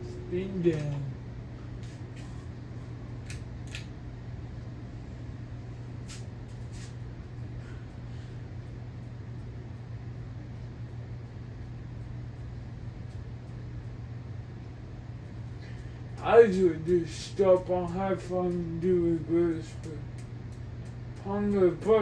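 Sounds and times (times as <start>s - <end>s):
ceiling fan motor humming: 0.0s - 22.0s.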